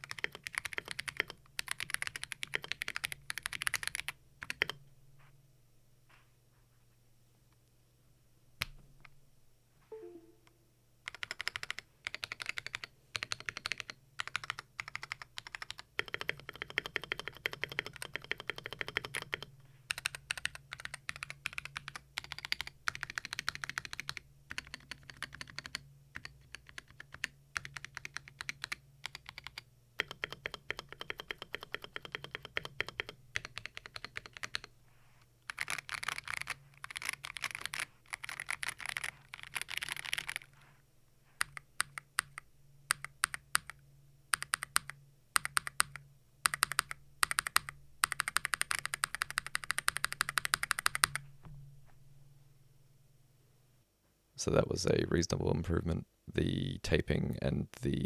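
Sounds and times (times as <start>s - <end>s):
mechanical keyboard typing: 0.0s - 4.8s, 11.1s - 34.7s, 35.4s - 40.5s, 41.4s - 51.2s.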